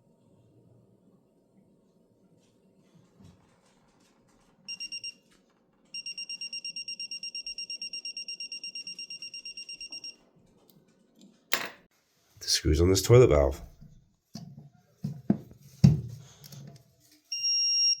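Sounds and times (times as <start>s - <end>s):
digital torque wrench beeping: 6.0s - 10.2s.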